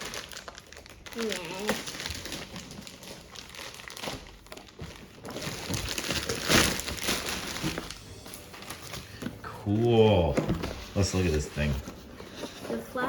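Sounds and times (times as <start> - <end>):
packaging ripping: 0.0 - 9.1
packaging rustling and crinkling: 0.0 - 13.0.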